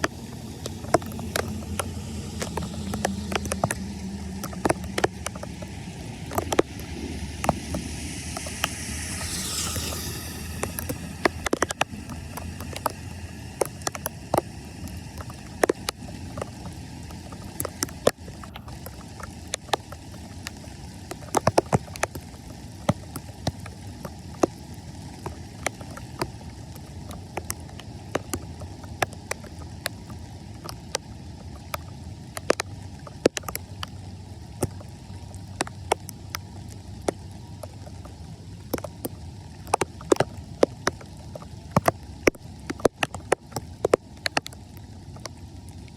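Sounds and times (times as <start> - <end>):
sharp clicks and knocks: 0.0 - 24.6, 31.6 - 33.9
floodwater running: 0.0 - 45.9.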